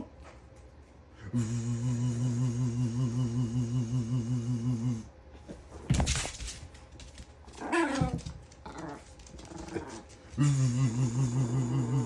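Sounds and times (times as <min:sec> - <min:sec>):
man vocalising a buzzing hum: 0:01.1 - 0:05.2, 0:10.3 - 0:12.0.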